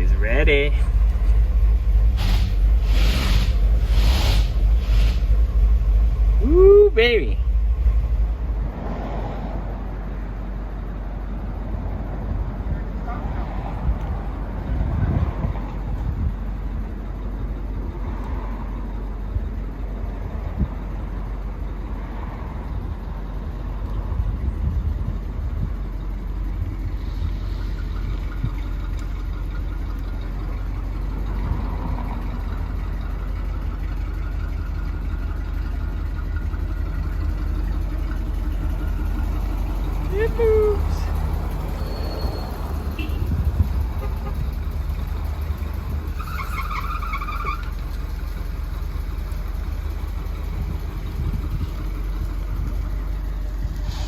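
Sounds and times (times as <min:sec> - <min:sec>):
car engine rumbling: 0:00.0 - 0:54.0.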